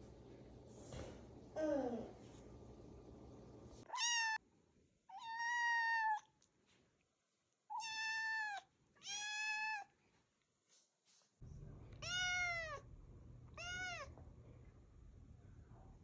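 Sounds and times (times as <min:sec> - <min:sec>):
cat meowing: 0:03.9 - 0:04.4, 0:05.1 - 0:06.3, 0:07.7 - 0:09.9, 0:12.0 - 0:12.8, 0:13.6 - 0:14.1.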